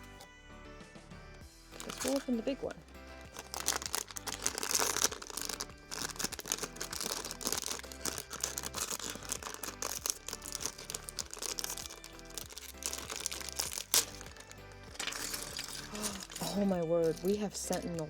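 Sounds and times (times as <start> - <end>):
background music: 0.0 - 18.0
plastic and paper crinkling: 1.8 - 18.0.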